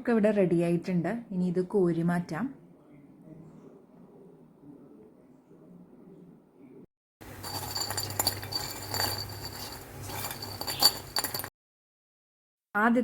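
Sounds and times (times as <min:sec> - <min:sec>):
metal utensil clinking on pan: 0:07.2 - 0:11.5.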